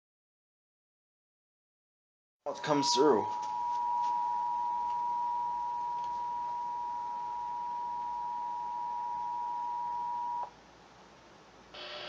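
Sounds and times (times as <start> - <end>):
steady two-tone alert signal: 2.5 - 10.5.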